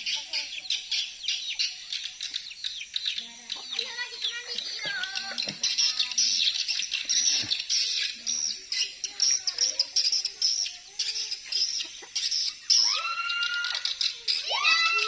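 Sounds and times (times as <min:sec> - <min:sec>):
high arching bird chirps: 0:00.0 - 0:15.0
lower rising and falling bird call: 0:12.1 - 0:15.0.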